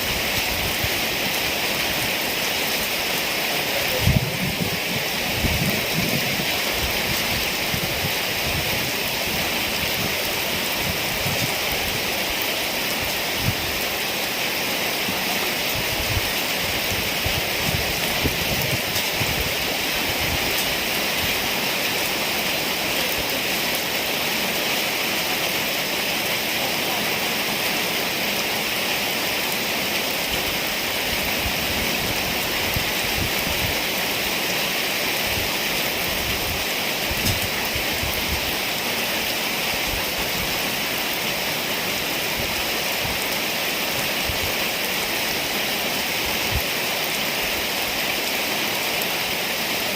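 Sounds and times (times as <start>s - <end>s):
wind rumbling on microphone: 0.0s - 3.0s, 3.7s - 14.0s, 15.0s - 21.6s, 30.2s - 33.9s, 35.2s - 38.6s, 44.0s - 44.6s
heavy rain pouring: 0.0s - 49.9s.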